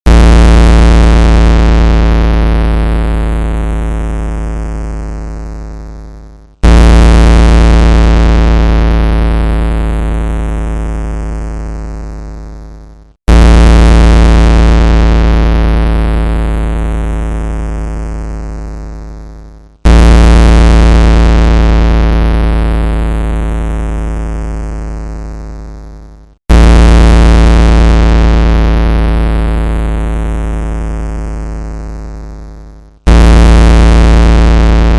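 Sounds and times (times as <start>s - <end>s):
bass-heavy synthesized alarm hits: 6.6s - 10.1s, 13.3s - 16.4s, 19.9s - 22.7s, 26.5s - 28.3s, 33.1s - 34.9s.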